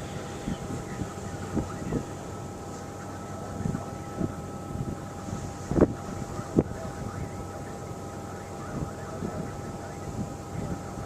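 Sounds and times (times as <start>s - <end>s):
wind buffeting microphone: 0.0s - 2.2s, 3.4s - 7.4s, 8.6s - 11.0s.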